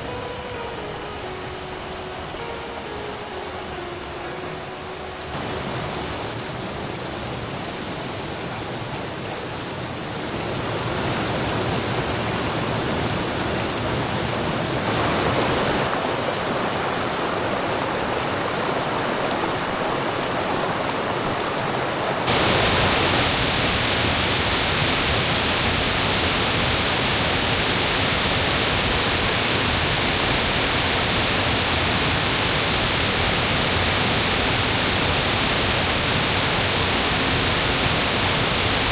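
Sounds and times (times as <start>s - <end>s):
mountain stream rushing: 22.3s - 38.9s.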